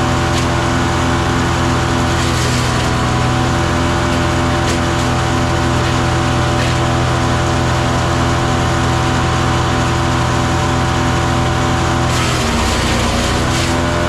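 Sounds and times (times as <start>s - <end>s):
wood chipping noise: 0.0s - 8.1s, 12.1s - 14.0s
wood chipper engine running: 0.0s - 14.0s.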